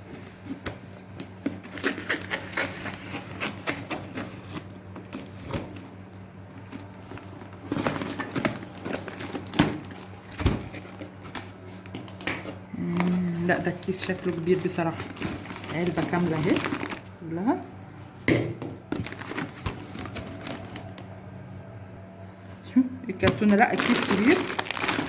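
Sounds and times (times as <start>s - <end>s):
steady low hum: 0.0s - 25.0s
cardboard and tape tearing: 1.6s - 5.7s, 23.8s - 25.0s.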